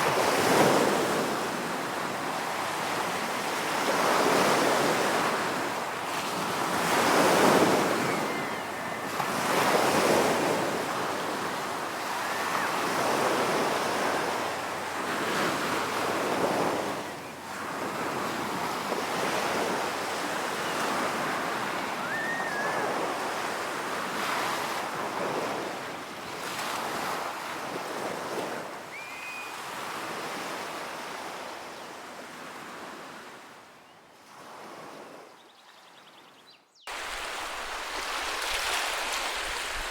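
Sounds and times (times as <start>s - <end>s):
ocean waves washing up a beach: 0.0s - 33.6s, 36.9s - 39.9s.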